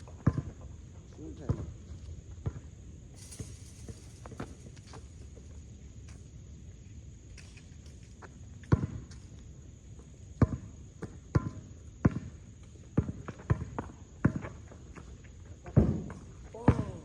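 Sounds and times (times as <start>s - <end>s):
basketball bouncing: 16.6s - 17.0s.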